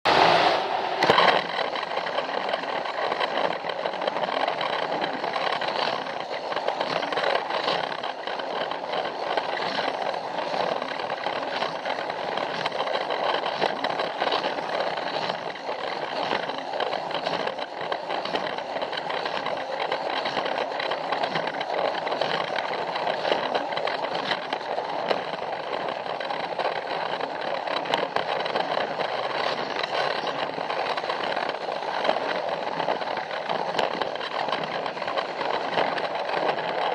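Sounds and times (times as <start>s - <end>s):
toy train motor whirring: 1.0s - 36.9s
wheels clicking on plastic track: 1.0s - 36.9s.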